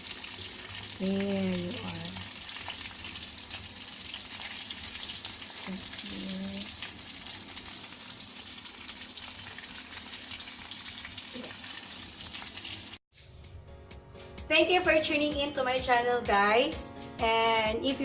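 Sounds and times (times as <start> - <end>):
food deep-frying in oil: 0.0 - 13.0.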